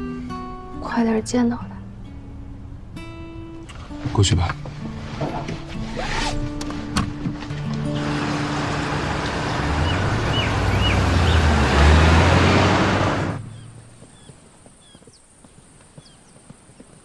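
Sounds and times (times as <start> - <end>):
car passing close: 3.6 - 14.4.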